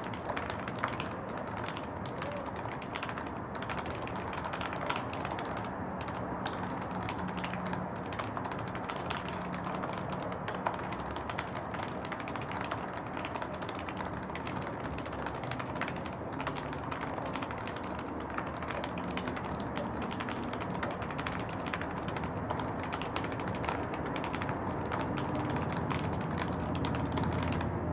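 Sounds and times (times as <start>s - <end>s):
fast keyboard typing: 0.0s - 27.9s.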